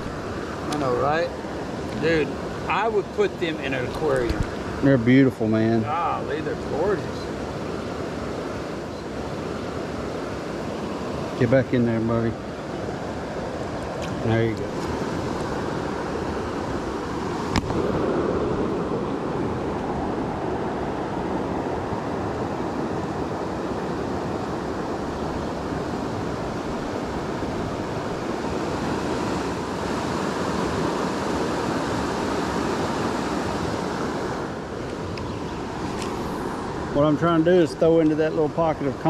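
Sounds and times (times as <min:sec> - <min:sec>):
fast-moving creek water: 0:00.0 - 0:39.0.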